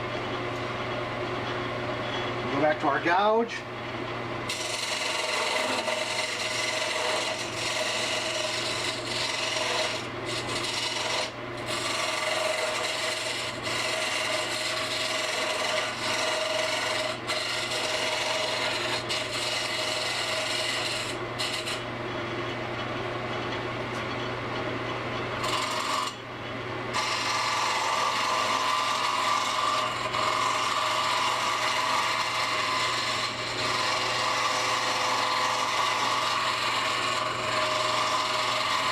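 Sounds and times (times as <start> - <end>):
lathe motor hum: 4.4 - 21.9, 25.4 - 26.2, 26.9 - 38.9
gouge scraping wood on lathe: 4.5 - 21.8, 25.4 - 26.2, 26.9 - 38.9.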